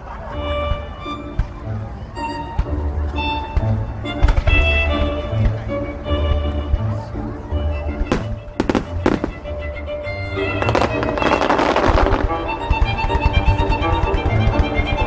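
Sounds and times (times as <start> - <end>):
music playing: 0.0 - 15.0
fireworks crackling: 8.1 - 9.6, 10.5 - 15.0.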